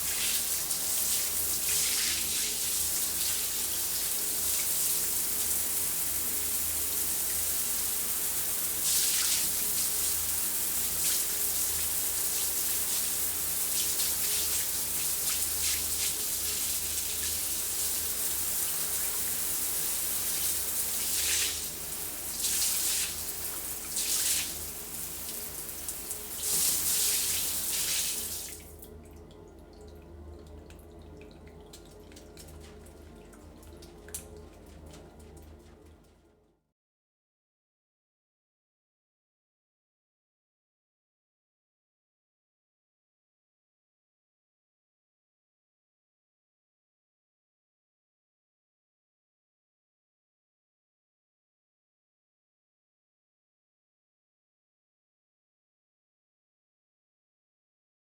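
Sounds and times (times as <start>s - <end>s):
shower spray hissing: 18.1s - 23.3s, 26.3s - 28.6s.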